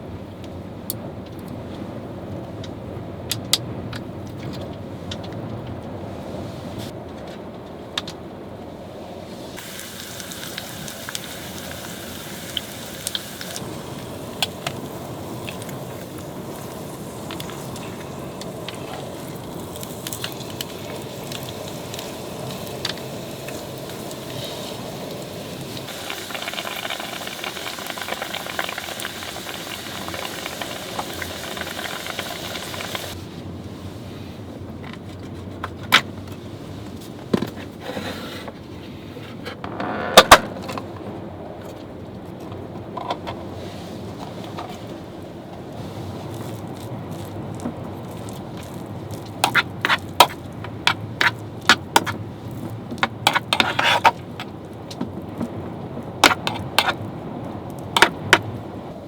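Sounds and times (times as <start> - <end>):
low rumble of wind: 0.0 - 26.1, 32.6 - 59.0
food sizzling on grill plate: 9.5 - 33.2.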